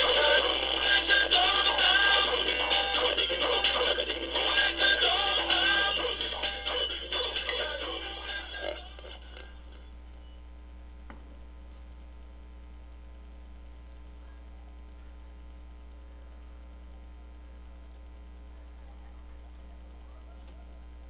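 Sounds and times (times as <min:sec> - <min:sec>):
music: 0:00.0 - 0:09.8
low electrical mains hum: 0:00.0 - 0:21.0.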